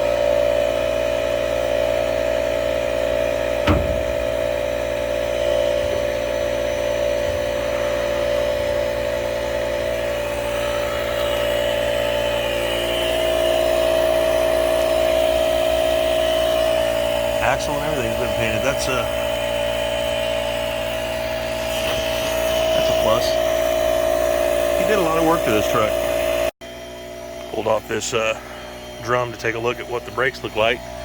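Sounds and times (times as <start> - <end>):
air compressor motor humming: 0.0 - 31.0
single knock: 3.6 - 4.4.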